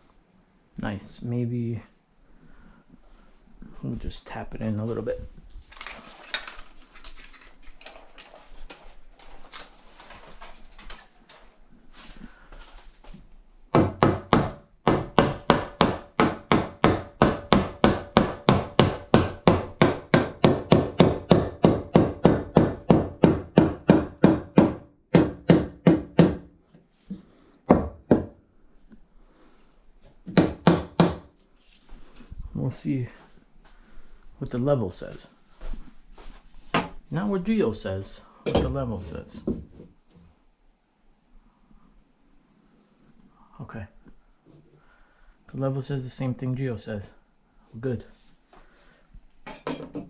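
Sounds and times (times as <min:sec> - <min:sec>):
hammer striking wood: 0:13.8 - 0:26.5, 0:27.7 - 0:28.4, 0:30.3 - 0:31.3.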